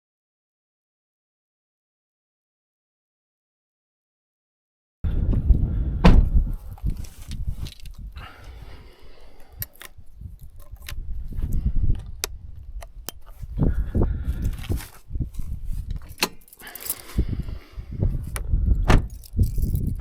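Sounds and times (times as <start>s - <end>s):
rustling and handling noise: 6.6s - 11.5s, 12.2s - 13.6s, 14.4s - 18.4s, 19.0s - 20.0s.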